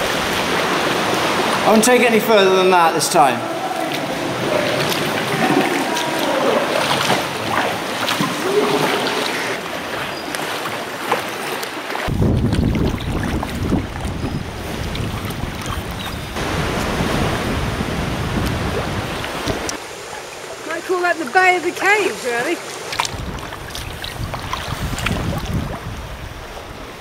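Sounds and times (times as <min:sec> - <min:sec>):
wind buffeting microphone: 0:12.1 - 0:19.8, 0:21.4 - 0:27.0.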